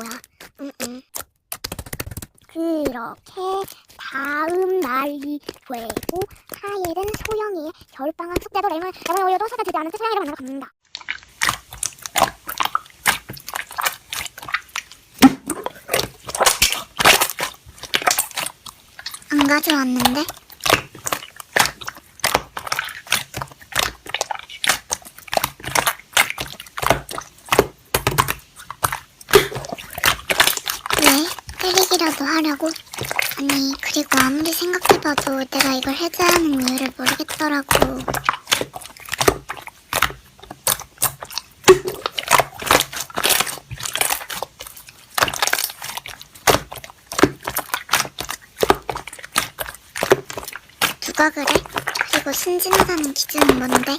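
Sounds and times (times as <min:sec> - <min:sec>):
slime squished by hand: 0:10.9 - 0:53.9.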